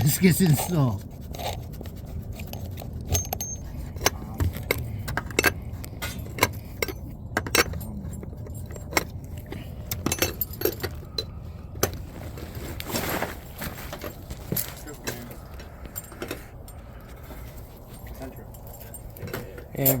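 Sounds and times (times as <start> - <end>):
steady low rumble: 0.0 - 19.9
light metallic clinks: 3.1 - 11.4, 14.1 - 20.0.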